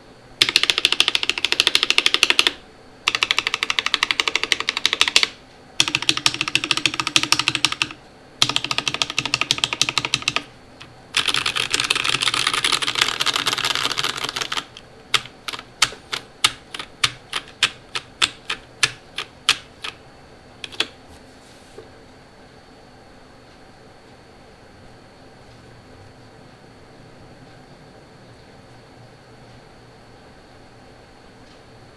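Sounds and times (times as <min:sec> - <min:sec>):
mechanical keyboard typing: 0:00.4 - 0:20.0, 0:20.6 - 0:21.0.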